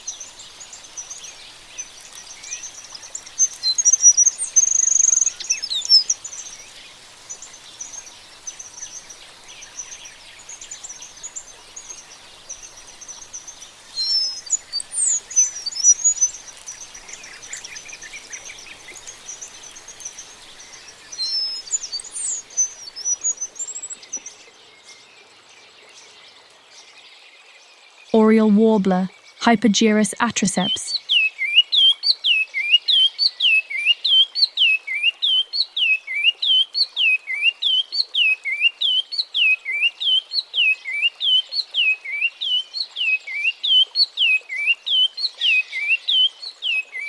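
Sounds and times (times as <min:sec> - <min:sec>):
faint high twittering: 0:00.0 - 0:24.3
outdoor hiss: 0:00.0 - 0:24.4.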